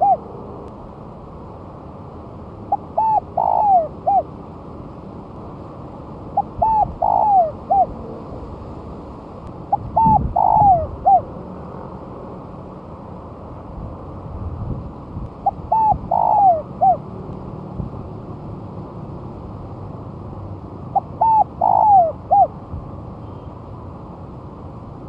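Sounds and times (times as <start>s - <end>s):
dove cooing: 0.0s - 0.4s, 2.7s - 4.3s, 6.4s - 8.1s, 9.7s - 11.3s, 15.4s - 17.1s, 20.9s - 22.5s.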